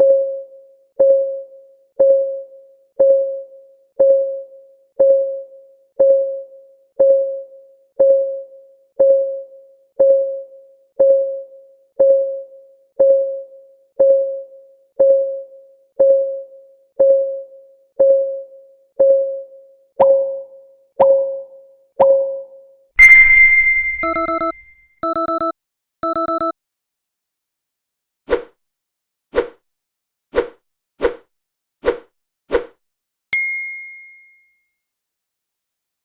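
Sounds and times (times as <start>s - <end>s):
countdown timer ticking plinks: 23.0s - 26.5s.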